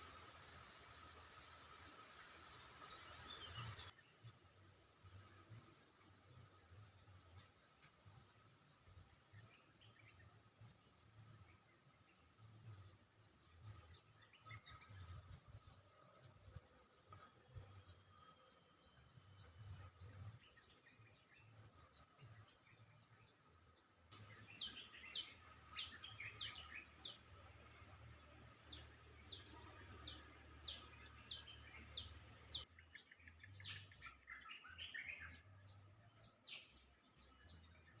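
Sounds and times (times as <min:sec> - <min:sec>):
small birds chirping: 0:00.0 - 0:38.0
high insect-like hum: 0:24.2 - 0:38.0.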